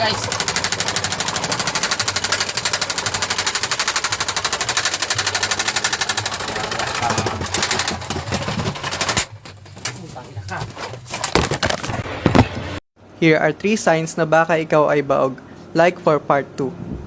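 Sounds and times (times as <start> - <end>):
fast rattling clatter: 0.0 - 12.0.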